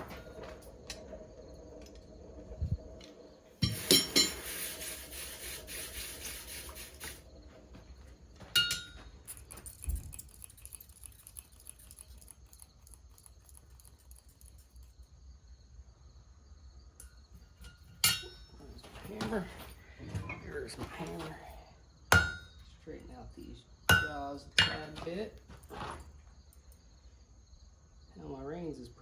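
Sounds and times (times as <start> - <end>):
metal clanking: 0.0 - 5.1, 7.0 - 14.9, 17.0 - 21.4, 22.1 - 22.7, 23.9 - 26.2
hissing clatter: 0.0 - 8.2
crickets chirping: 0.0 - 29.0.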